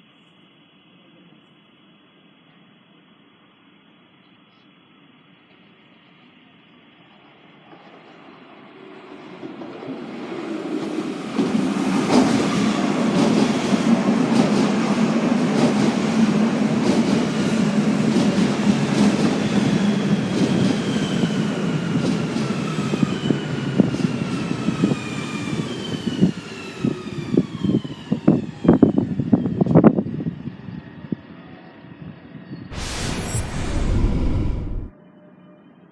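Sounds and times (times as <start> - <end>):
train rail rumble: 32.7 - 34.9.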